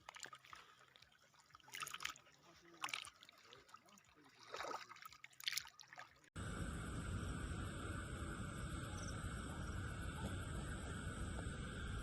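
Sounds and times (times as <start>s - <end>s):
insects chorus: 6.4s - 12.0s
low rumble: 6.4s - 12.0s.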